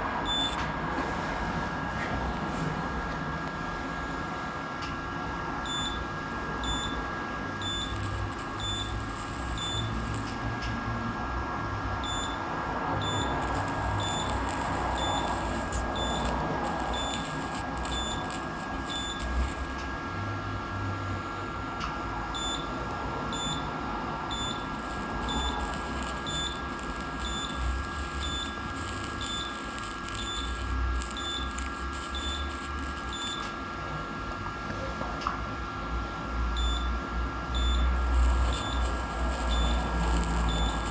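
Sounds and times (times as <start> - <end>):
steady electrical hum: 0.0 - 4.6, 5.8 - 34.7, 35.5 - 40.9
short high beeps: 0.3 - 0.7, 7.6 - 10.4, 13.0 - 19.8, 24.3 - 33.5, 37.6 - 40.9
hissing air: 7.7 - 10.4, 13.2 - 19.8, 24.5 - 33.5, 37.9 - 40.9.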